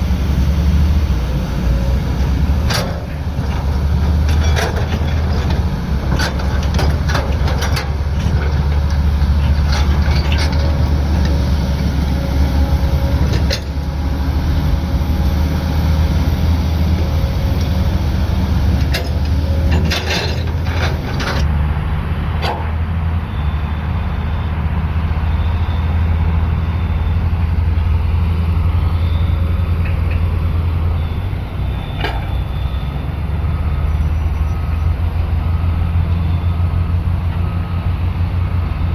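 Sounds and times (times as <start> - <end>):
diesel engine rumbling: 0.0 - 38.9
knocks and clanks: 2.7 - 10.8, 18.8 - 21.5, 22.4 - 22.8.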